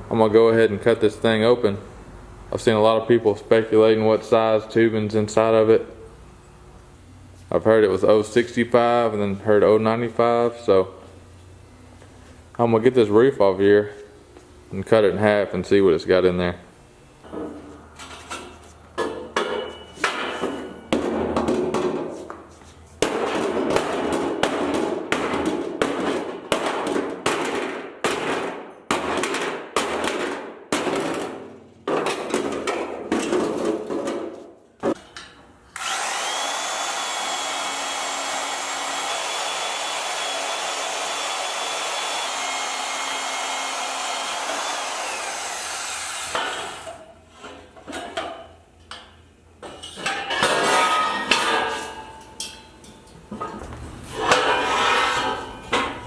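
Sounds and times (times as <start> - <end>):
power cutting tool whining: 35.8 - 46.9.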